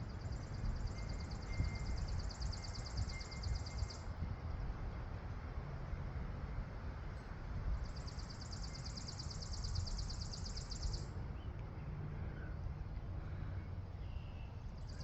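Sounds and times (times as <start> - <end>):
wind buffeting microphone: 0.0 - 5.3.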